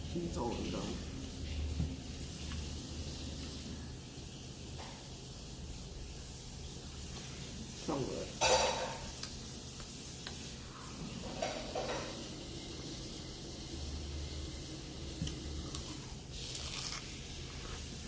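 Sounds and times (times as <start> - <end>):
close-up eating sounds: 0.0 - 18.0
steady hiss: 0.0 - 18.0
crunching or rustling: 15.7 - 18.0.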